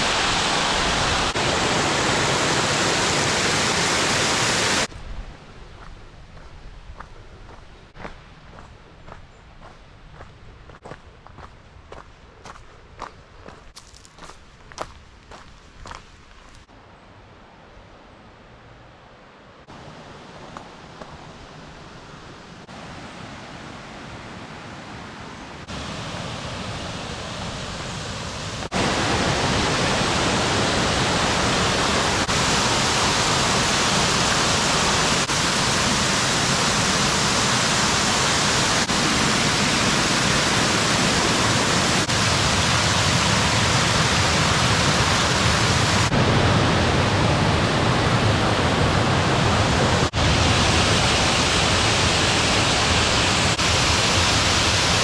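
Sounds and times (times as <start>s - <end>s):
waterfall rushing: 0.0s - 4.9s, 22.6s - 55.0s.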